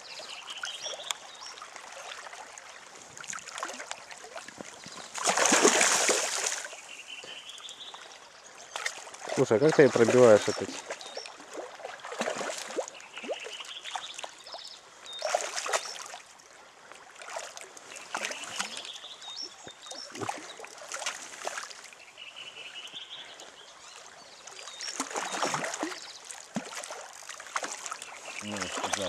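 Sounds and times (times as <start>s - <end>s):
river water splashing: 0.0s - 29.0s
rushing river current: 0.0s - 29.0s.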